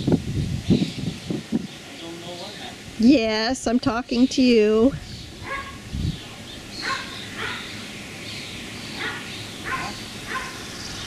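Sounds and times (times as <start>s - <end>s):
dog barking: 5.4s - 5.8s, 6.8s - 7.7s, 9.0s - 10.8s.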